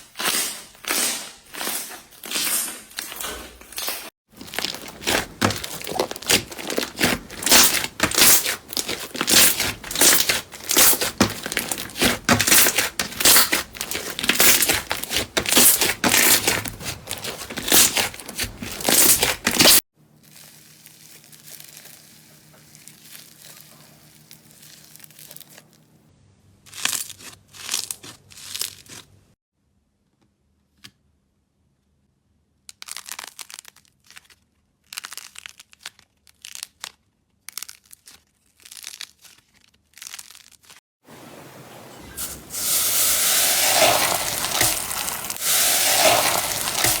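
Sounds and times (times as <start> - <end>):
slime crackling and popping: 4.4 - 25.8, 32.7 - 40.8, 42.6 - 47.0.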